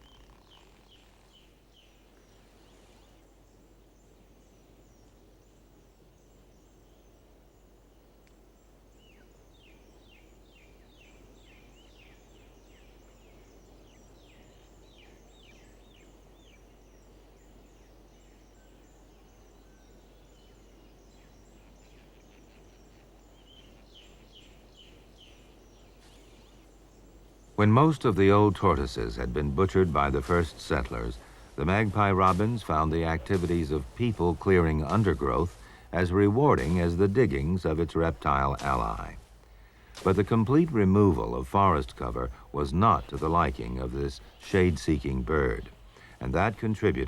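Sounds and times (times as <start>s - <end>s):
descending bird chirps: 0.0s - 1.9s
high bird twittering: 0.0s - 3.2s
low steady hum: 0.0s - 47.0s.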